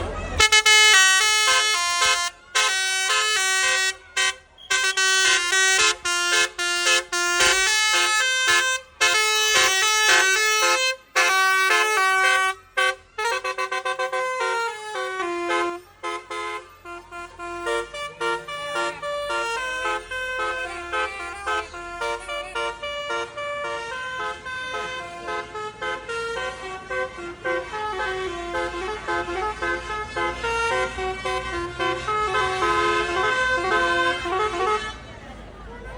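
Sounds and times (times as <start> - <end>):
bus musical horn tune: 0.3 - 35.2.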